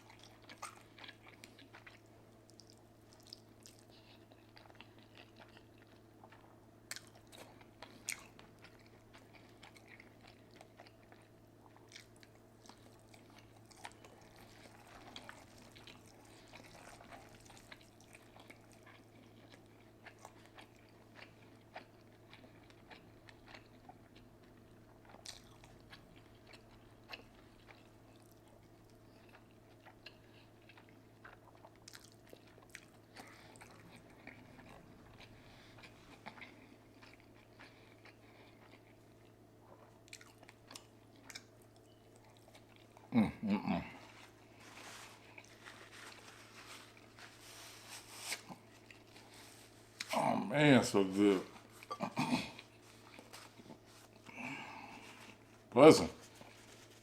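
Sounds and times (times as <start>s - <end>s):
person chewing: 0.0s - 50.4s, 51.0s - 57.0s
steady low hum: 0.0s - 57.0s.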